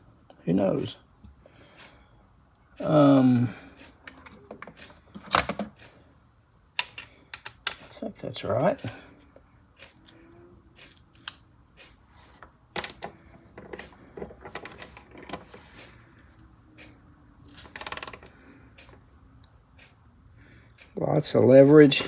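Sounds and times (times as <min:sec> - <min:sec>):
rapid ratchet clicks: 0:17.6 - 0:18.3.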